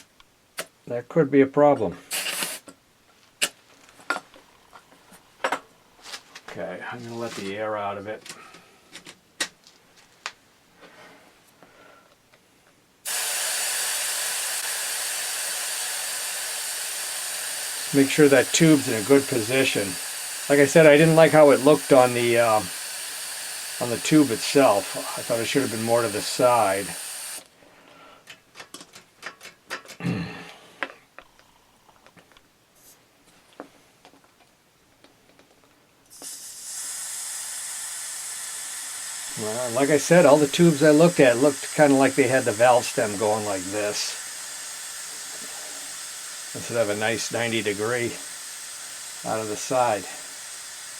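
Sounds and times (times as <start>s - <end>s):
air hissing from tire valve: 2.1s - 2.7s, 13.0s - 27.5s, 36.1s - 50.9s.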